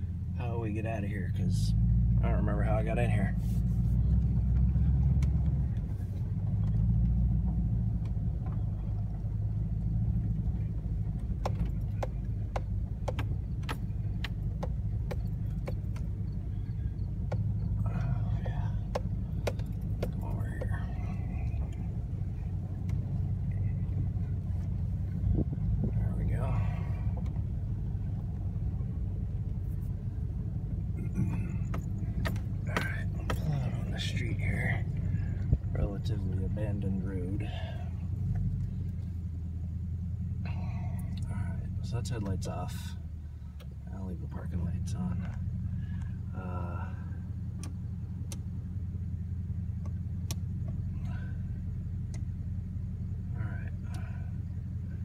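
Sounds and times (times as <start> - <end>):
pickup truck rumbling: 0.0 - 55.0
sharp clicks: 11.2 - 17.8
sharp ticks: 11.2 - 21.9.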